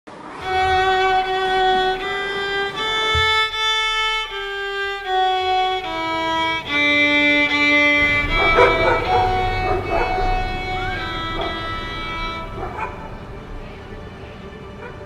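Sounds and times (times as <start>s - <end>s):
solo violin slow melody: 0.4s - 14.9s.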